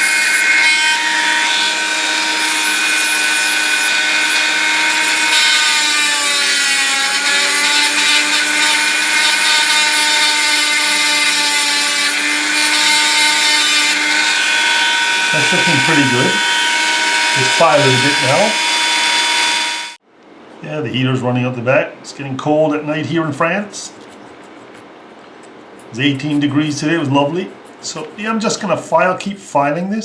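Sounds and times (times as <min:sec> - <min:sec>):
rotary tool grinding metal: 0:00.0 - 0:20.0.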